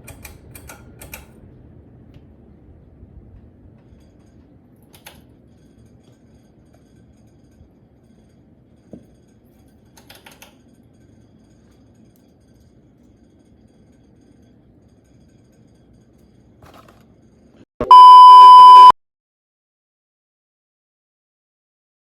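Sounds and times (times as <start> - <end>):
ceiling fan whooshing: 0.0 - 17.6.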